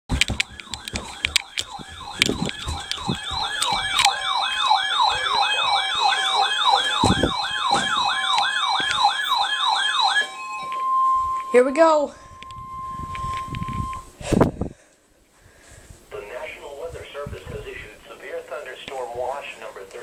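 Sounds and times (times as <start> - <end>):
clicks: 0.1 - 9.4
yelping alert alarm: 0.1 - 14.1.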